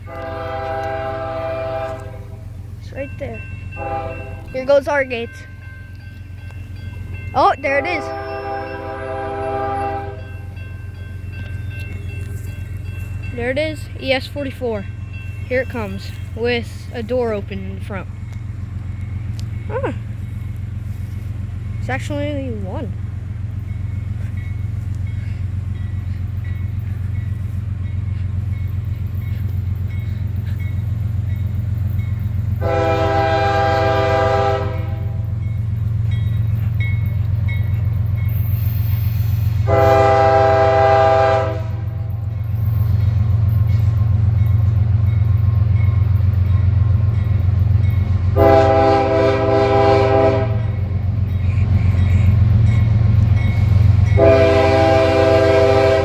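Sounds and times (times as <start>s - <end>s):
locomotive air horn blasts: 0.0s - 2.6s, 3.8s - 4.6s, 7.7s - 10.4s, 32.6s - 35.3s, 39.6s - 42.0s, 48.4s - 50.8s, 54.1s - 56.0s
train rumble: 0.0s - 56.0s.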